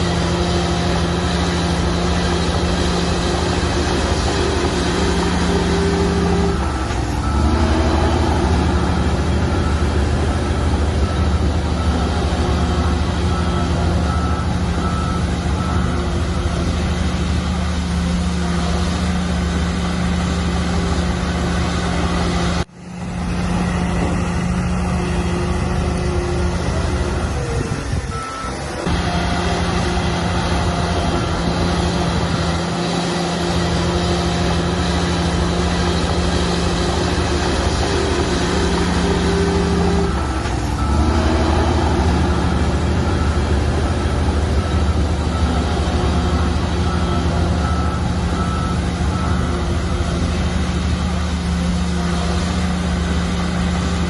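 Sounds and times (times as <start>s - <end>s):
heavy diesel machinery running: 0.0s - 54.0s.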